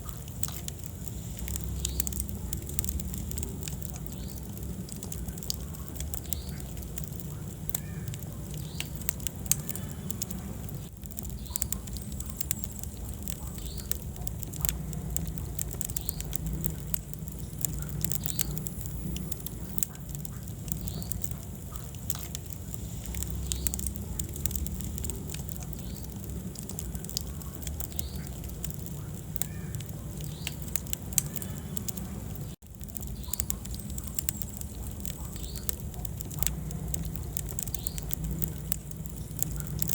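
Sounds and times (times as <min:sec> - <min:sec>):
fire crackling and popping: 0:00.0 - 0:39.9.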